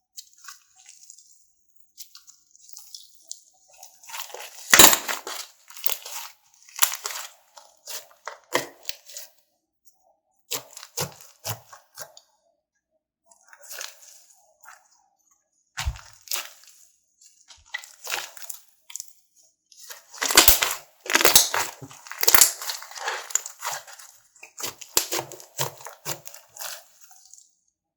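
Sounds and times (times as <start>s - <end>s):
slime crackling and popping: 20.1s - 26.8s.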